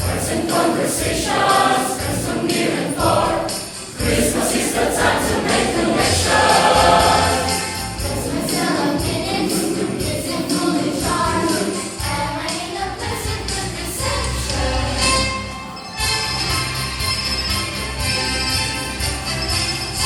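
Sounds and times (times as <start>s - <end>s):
jingle bells shaken: 0.0s - 14.8s
choir singing: 0.0s - 15.6s
instrumental accompaniment: 0.0s - 20.0s.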